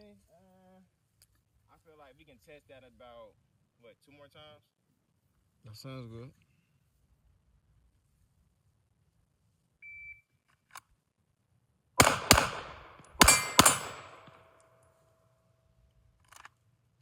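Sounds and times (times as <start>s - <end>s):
pistol shots: 12.0s - 14.4s
steel target ringing: 12.0s - 14.4s.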